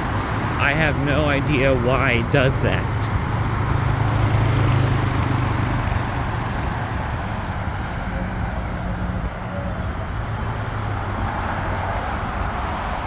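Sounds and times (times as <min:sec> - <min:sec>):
low engine tone: 0:00.0 - 0:06.5
vehicles running past: 0:00.0 - 0:13.0.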